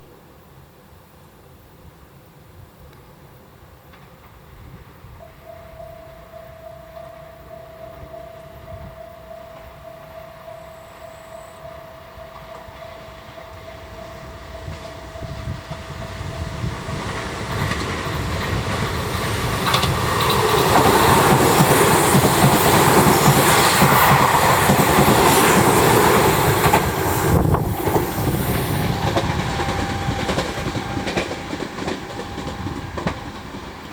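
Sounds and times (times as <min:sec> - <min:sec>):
electric train passing: 0:03.2 - 0:33.9
level crossing alarm ringing: 0:05.2 - 0:17.5, 0:28.8 - 0:33.2.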